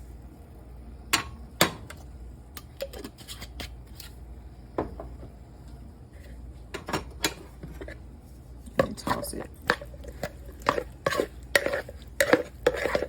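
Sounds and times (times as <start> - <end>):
utensils and dishes clinking: 8.8 - 13.0.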